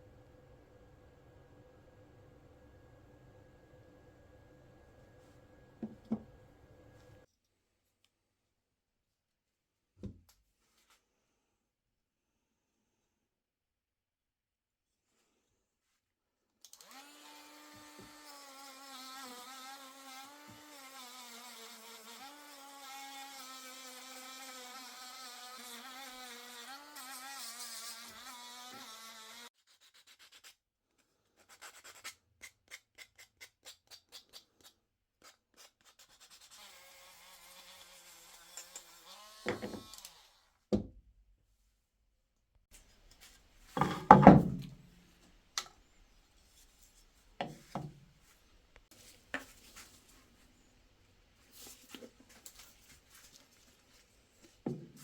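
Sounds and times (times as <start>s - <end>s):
loud knocks: 43.8s - 44.8s.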